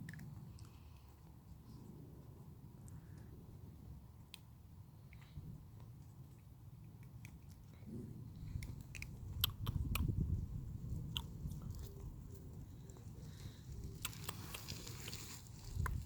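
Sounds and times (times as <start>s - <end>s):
puppy grinding teeth: 6.4s - 10.2s.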